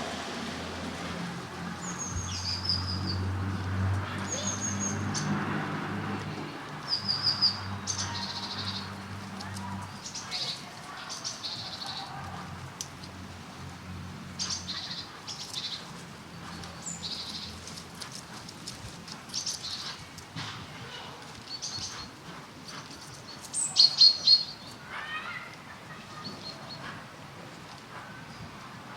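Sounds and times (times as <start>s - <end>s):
birds chirping: 21.4s - 27.0s.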